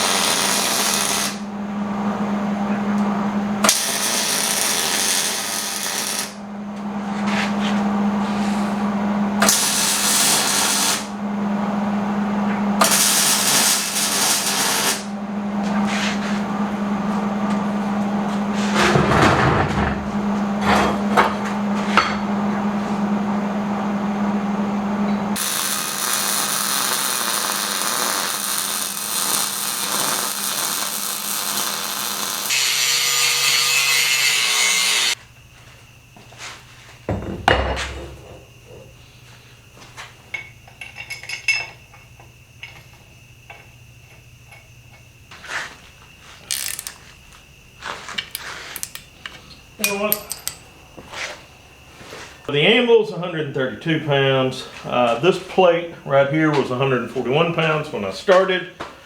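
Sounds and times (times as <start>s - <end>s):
power tool bursts: 0.0s - 1.4s, 3.6s - 6.4s, 9.4s - 11.1s, 12.8s - 15.1s, 25.4s - 35.2s
steady motor hum: 0.0s - 36.4s.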